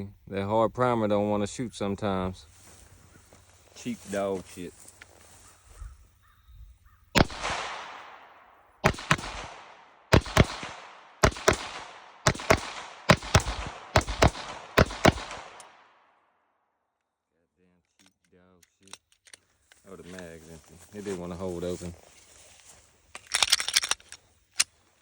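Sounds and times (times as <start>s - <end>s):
gunshots with long echo: 7.1s - 16.3s.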